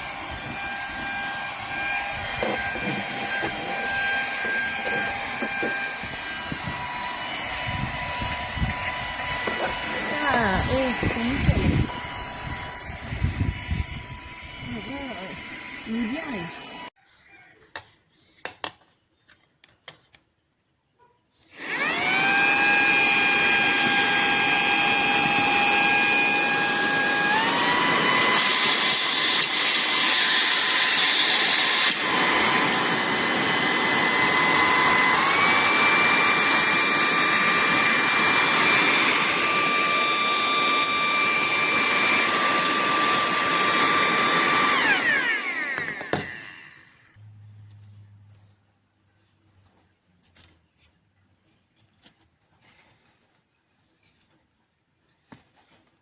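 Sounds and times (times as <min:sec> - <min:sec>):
handheld vacuum motor whining: 0:00.0 - 0:17.0, 0:21.5 - 0:47.2.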